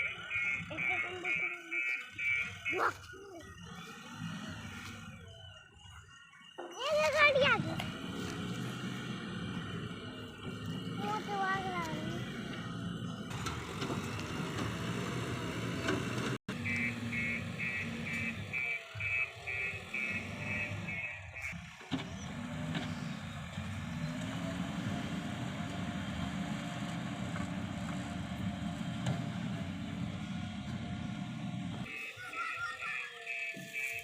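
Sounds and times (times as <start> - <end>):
fast beeping alarm: 0.0 - 8.0, 16.5 - 21.8, 31.8 - 34.0
backhoe loader engine running: 0.0 - 32.7.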